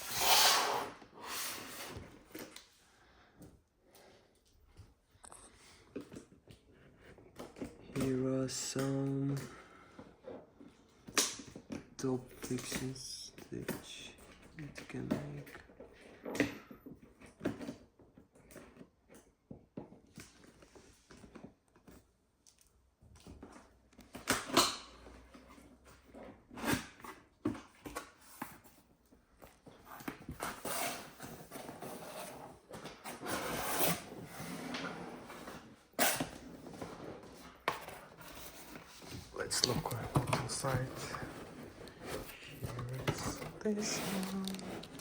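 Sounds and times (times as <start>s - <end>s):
packaging rustling: 38.1s - 45.0s.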